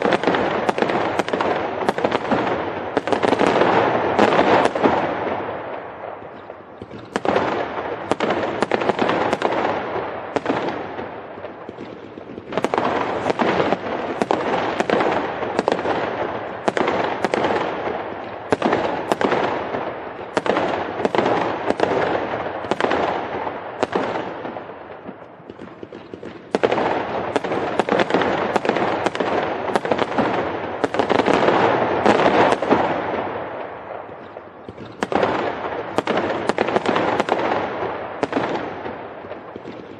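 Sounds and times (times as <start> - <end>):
fireworks bangs: 0.0 - 39.9
fireworks crackle: 0.0 - 39.9.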